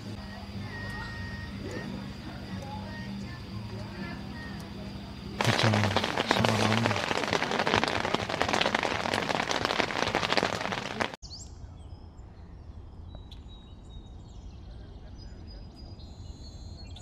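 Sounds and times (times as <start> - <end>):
heavy rain falling: 5.4 - 11.2.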